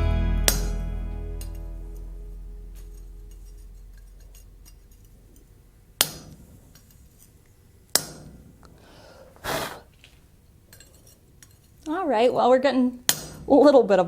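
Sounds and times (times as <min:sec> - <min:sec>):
hammer striking chisel on steel: 0:00.5 - 0:00.8, 0:06.0 - 0:06.4, 0:07.9 - 0:08.3.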